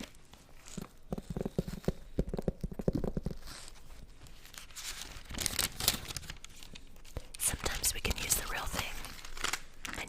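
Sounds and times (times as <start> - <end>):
paper rustling and crinkling: 2.9 - 10.0.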